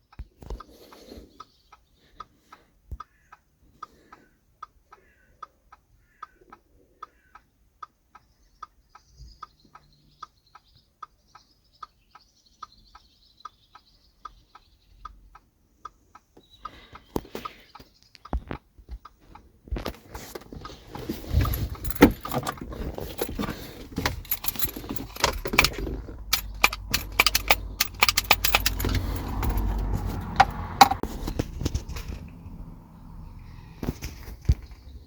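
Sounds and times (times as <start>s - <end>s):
sharp clicks and knocks: 17.2s - 32.4s.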